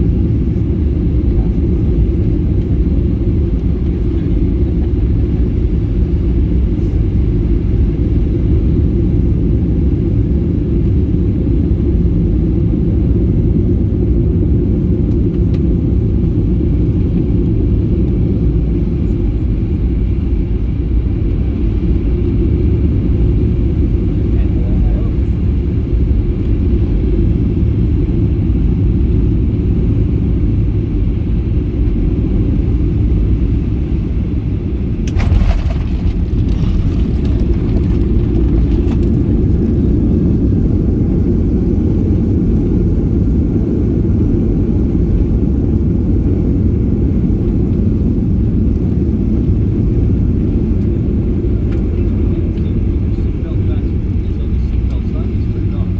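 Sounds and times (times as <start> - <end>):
airliner cabin low rumble: 0.0 - 55.9
clatter of knocks and rattles: 35.0 - 39.9.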